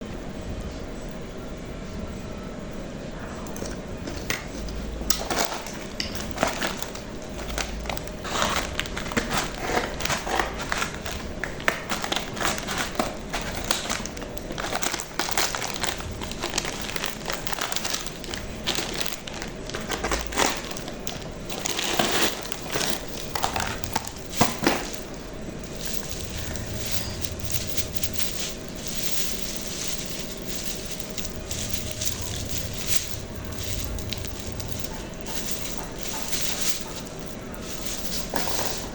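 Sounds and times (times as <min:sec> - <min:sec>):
packaging crinkling: 0:03.4 - 0:38.9
papery skins rustling: 0:03.4 - 0:38.9.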